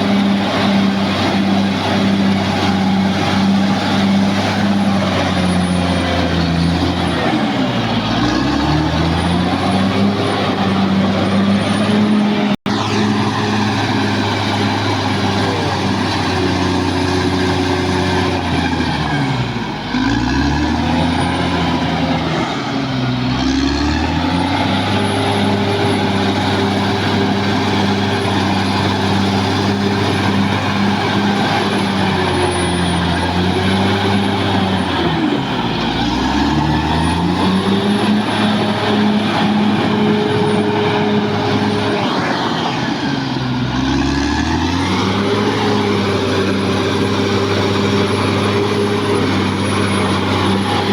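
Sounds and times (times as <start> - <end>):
bulldozer diesel engine lugging: 0.0 - 50.9.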